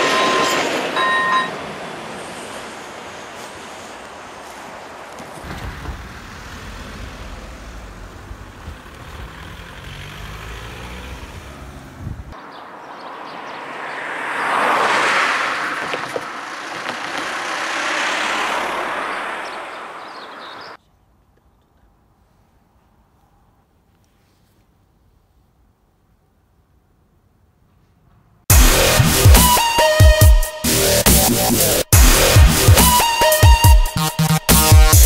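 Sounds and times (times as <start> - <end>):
vehicle passing close: 0.0 - 20.8.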